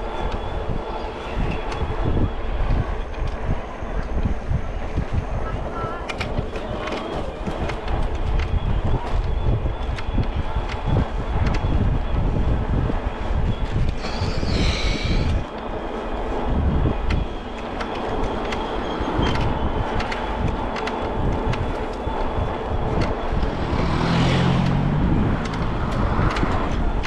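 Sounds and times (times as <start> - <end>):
street traffic: 0.0 - 27.0
wind buffeting microphone: 0.0 - 27.0
vehicle passing with low hum: 23.2 - 27.0.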